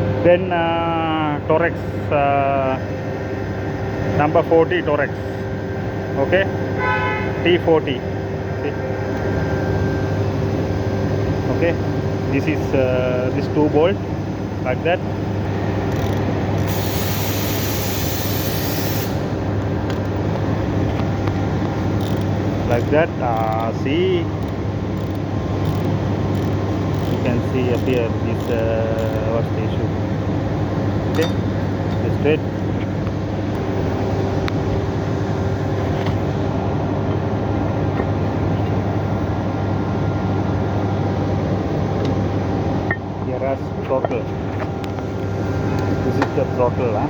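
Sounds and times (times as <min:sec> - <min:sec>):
steady low hum: 0:00.0 - 0:47.0
air hissing from a nozzle: 0:16.6 - 0:19.4
faint metallic tool ticks: 0:24.4 - 0:29.2.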